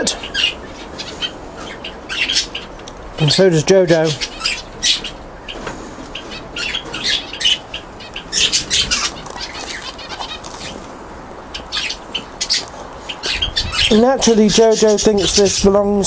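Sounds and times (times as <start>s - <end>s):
small birds chirping: 0.0s - 16.0s
wings fluttering: 4.2s - 14.0s.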